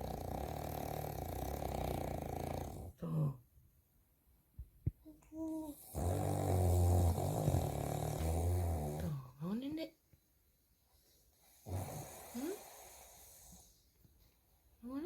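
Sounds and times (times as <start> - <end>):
man snoring: 0.0 - 2.9, 5.8 - 9.2, 11.6 - 13.6.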